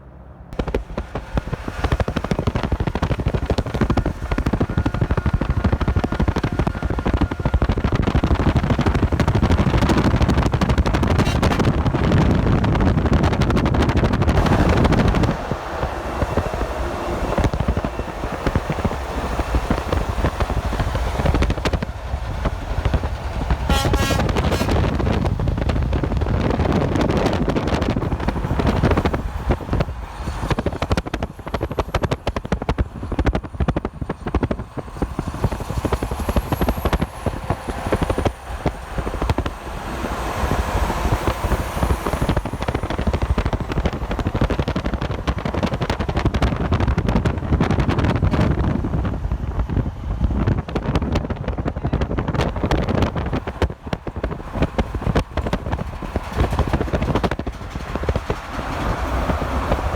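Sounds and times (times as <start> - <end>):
trucks and cars passing: 0.0 - 59.9
wind buffeting microphone: 0.5 - 59.9.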